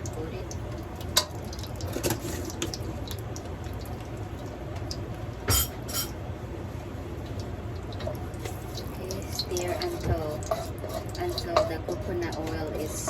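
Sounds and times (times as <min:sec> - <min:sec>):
utensils clinking on dishes: 0:05.5 - 0:06.2.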